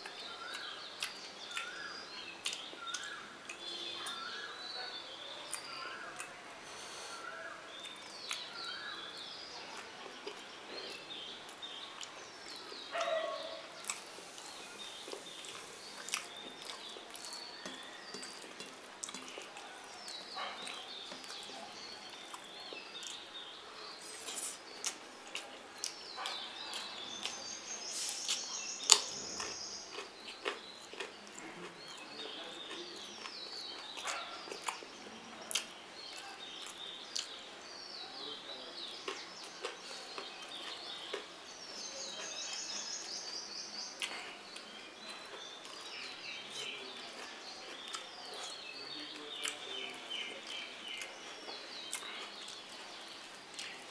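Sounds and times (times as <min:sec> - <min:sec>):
chewing: 0:00.0 - 0:04.3, 0:09.7 - 0:23.3, 0:24.1 - 0:27.4, 0:28.0 - 0:37.3, 0:38.9 - 0:41.4, 0:44.0 - 0:53.9
high chirping calls: 0:25.8 - 0:31.0.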